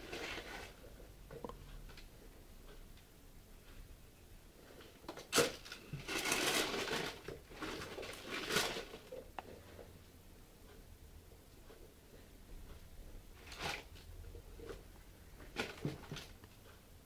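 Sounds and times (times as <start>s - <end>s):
packaging rustling and crinkling: 5.1s - 9.2s.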